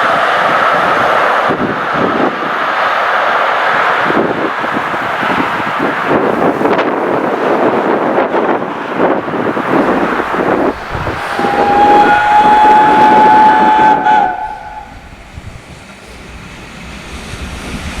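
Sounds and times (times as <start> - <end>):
steam locomotive exhaust beats: 0.0 - 18.0
steam whistle: 9.7 - 15.0.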